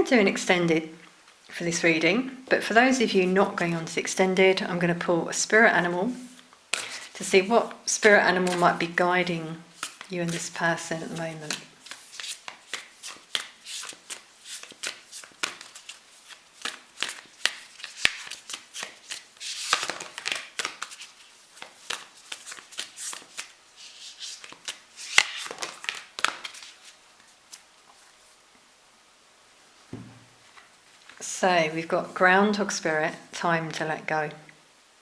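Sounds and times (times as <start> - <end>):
cards being shuffled: 6.3 - 7.2, 8.4 - 8.7, 9.7 - 28.3.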